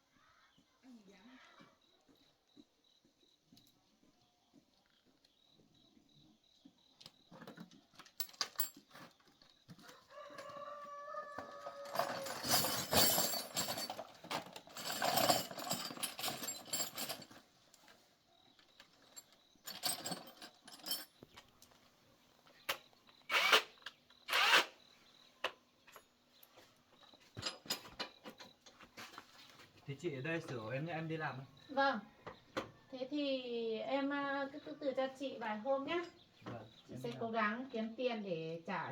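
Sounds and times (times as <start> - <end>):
rooster crowing: 9.8 - 12.7
rustling and scraping: 11.4 - 22.7, 25.9 - 29.9.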